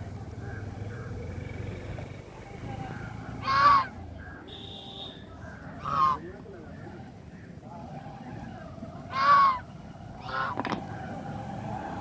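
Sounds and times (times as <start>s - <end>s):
duck quacking: 3.4s - 3.9s, 5.8s - 6.3s, 9.1s - 9.6s, 10.2s - 10.6s.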